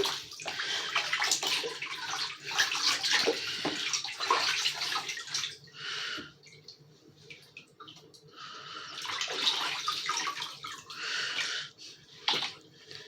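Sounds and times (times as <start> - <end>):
bathwater splashing: 0.0 - 5.7, 8.9 - 12.6.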